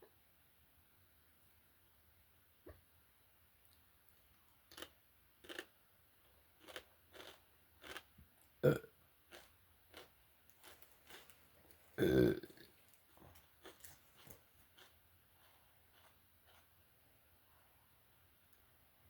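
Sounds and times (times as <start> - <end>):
potato chips crunching: 4.7 - 5.7, 6.6 - 8.1, 9.3 - 16.7
short burp: 8.6 - 8.9, 12.0 - 12.7.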